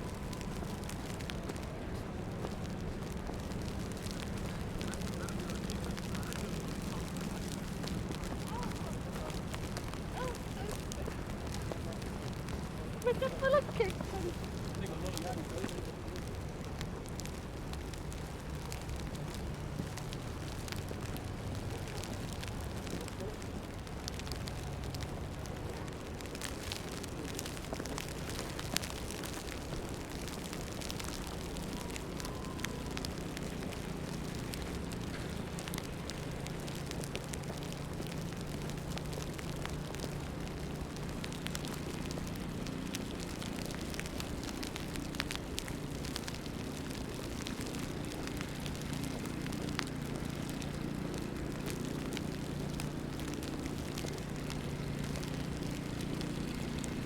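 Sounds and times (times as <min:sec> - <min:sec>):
crackling hiss: 0:00.0 - 0:57.0
low traffic drone: 0:00.0 - 0:57.0
small ticks and pops: 0:00.0 - 0:57.0.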